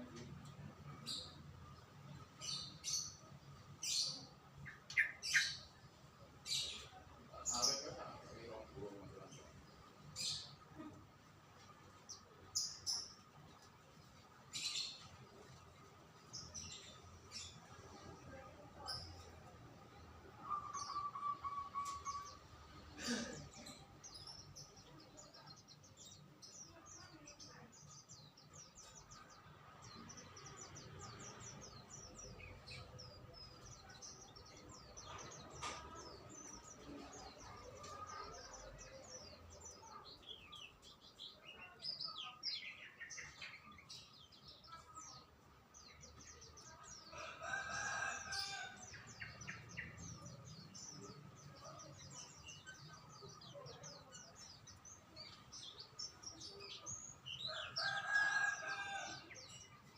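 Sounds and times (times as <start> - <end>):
songbirds chirping and twittering: 0.0 - 59.9
steady bird trill: 20.4 - 22.5.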